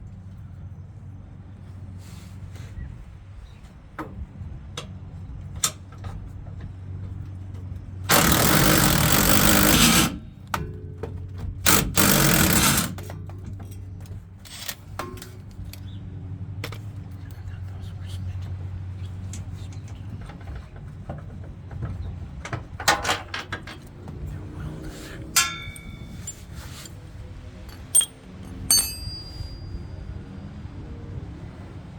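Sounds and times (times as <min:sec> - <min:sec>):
metal parts clinking: 0:08.1 - 0:10.2, 0:11.7 - 0:15.8, 0:25.3 - 0:27.0, 0:27.6 - 0:30.0
power tool running: 0:08.1 - 0:10.3, 0:11.7 - 0:13.0.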